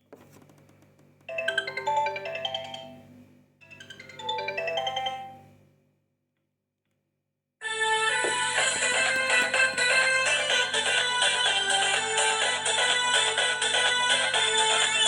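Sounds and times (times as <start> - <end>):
phone ringtone melody: 1.3 - 5.5, 7.6 - 15.0.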